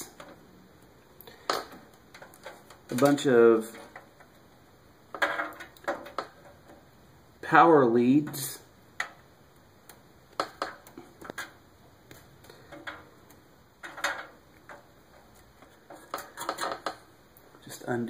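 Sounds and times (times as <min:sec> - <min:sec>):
plastic connectors clicking and rustling: 0:00.0 - 0:04.4, 0:05.1 - 0:06.9, 0:09.8 - 0:17.1.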